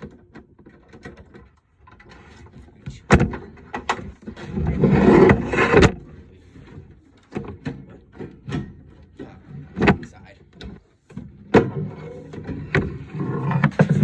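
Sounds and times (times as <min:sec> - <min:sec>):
computer side panel scraping: 0:04.4 - 0:06.0.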